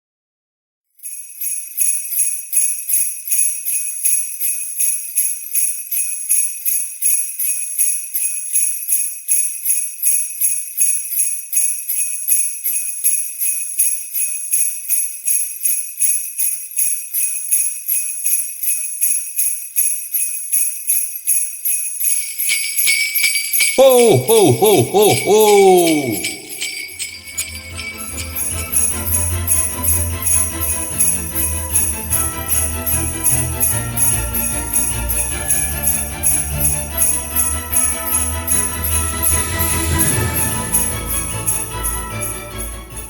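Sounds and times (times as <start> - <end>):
sleigh bells jingling: 1.0 - 43.0.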